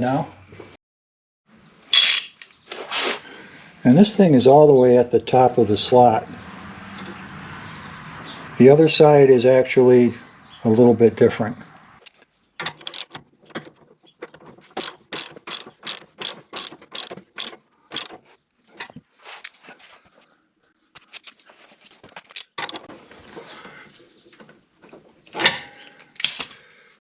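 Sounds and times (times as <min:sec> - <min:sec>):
metal clatter: 0:01.9 - 0:02.6, 0:12.6 - 0:18.2
socket ratchet clicking: 0:12.8 - 0:13.2, 0:14.8 - 0:18.2.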